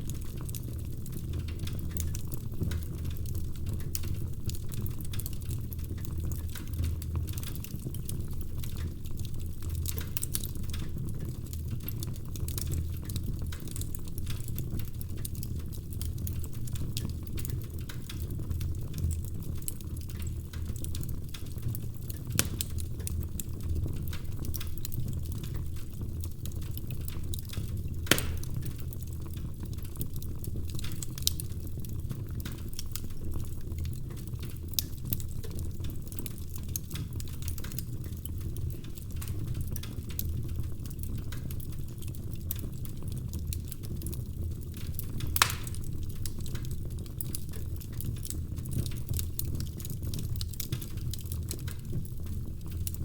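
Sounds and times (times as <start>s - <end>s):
log fire crackling: 0.0s - 53.0s
sharp pop from fire: 28.1s - 28.7s, 45.4s - 45.9s.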